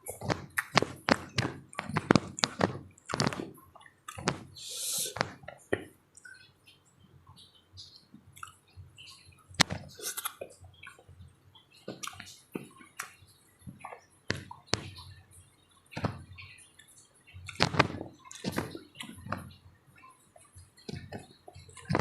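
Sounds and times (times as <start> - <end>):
wet chewing and smacking: 0.0 - 4.4, 8.3 - 8.6.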